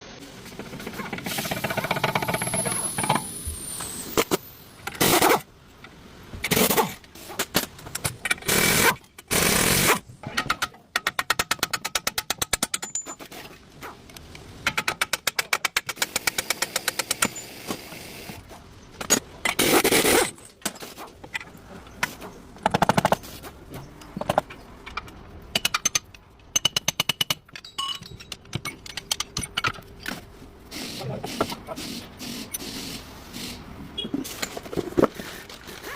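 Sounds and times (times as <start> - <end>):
air tool rapid hammering clicks: 8.4 - 10.0, 14.7 - 17.4
loud air hissing: 30.7 - 33.8.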